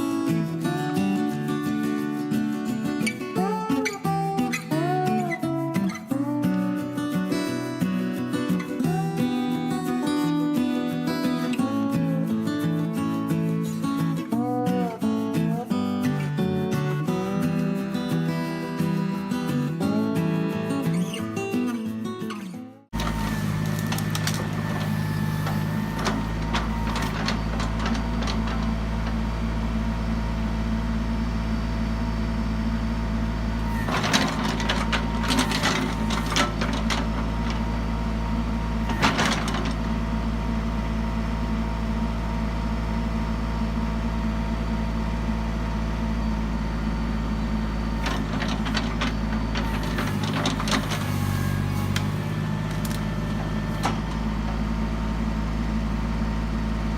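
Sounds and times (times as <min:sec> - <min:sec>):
tractor diesel engine running: 0:00.0 - 0:21.6, 0:22.9 - 0:56.9
sharp knocks and clatter: 0:23.0 - 0:29.2, 0:33.7 - 0:37.7, 0:38.9 - 0:40.0, 0:48.0 - 0:54.6.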